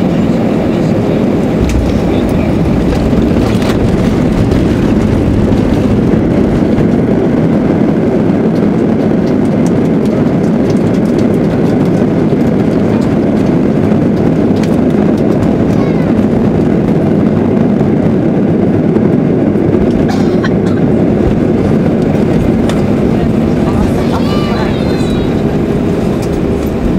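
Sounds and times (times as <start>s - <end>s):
aircraft engines rumbling: 0.0s - 26.9s
wheels rolling on pavement: 1.6s - 15.8s, 21.2s - 26.9s.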